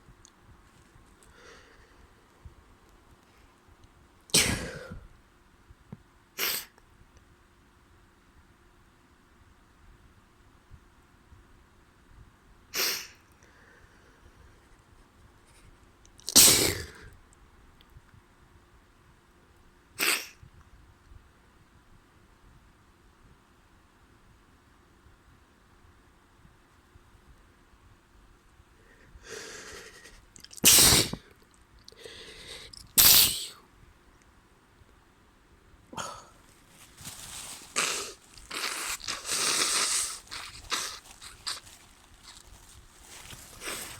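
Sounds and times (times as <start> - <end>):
person sneezing: 4.3 - 5.0, 6.4 - 6.8, 12.8 - 13.2, 16.3 - 17.1, 20.0 - 20.4, 30.6 - 31.3, 33.0 - 33.6, 37.7 - 41.0
drawn-in breath: 32.0 - 32.8.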